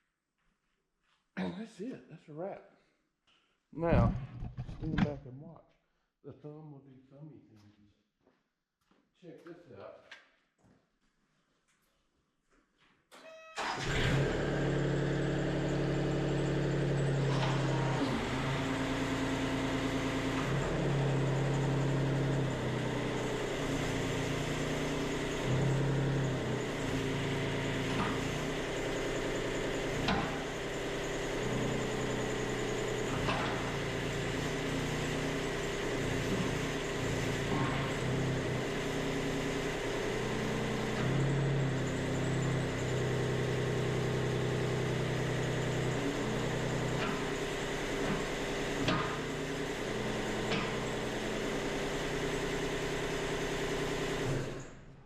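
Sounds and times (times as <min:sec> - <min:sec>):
excavator diesel engine running: 0:13.6 - 0:54.6.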